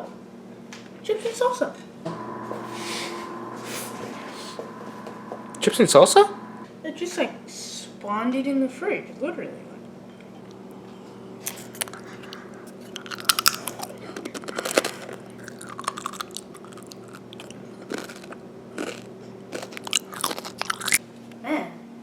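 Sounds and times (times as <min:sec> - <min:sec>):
low hum: 0:02.1 - 0:06.7
chips being crunched: 0:11.4 - 0:21.0.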